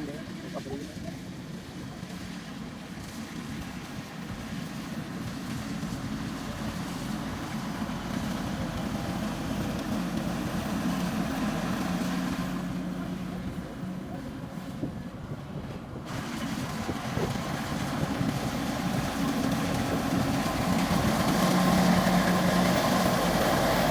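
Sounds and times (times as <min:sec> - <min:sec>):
combine harvester engine running: 0:00.0 - 0:23.9.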